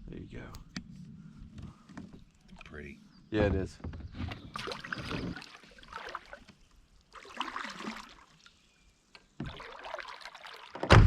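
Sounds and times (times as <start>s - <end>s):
water trickling and splashing: 2.2s - 2.9s, 3.9s - 10.9s.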